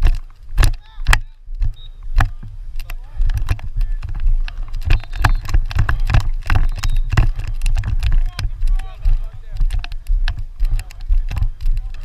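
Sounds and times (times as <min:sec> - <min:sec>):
lacrosse sticks clacking: 0:00.0 - 0:12.0
wind rumble on microphone: 0:00.0 - 0:12.0.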